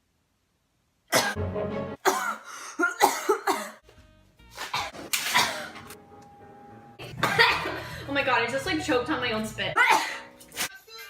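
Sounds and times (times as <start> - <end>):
woman coughing hard: 1.1 - 1.4, 2.0 - 3.8, 4.7 - 5.8, 7.2 - 7.8, 9.8 - 10.3.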